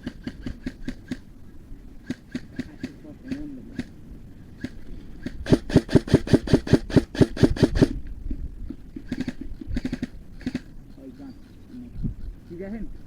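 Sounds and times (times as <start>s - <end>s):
airsoft gun firing: 5.4s - 8.0s.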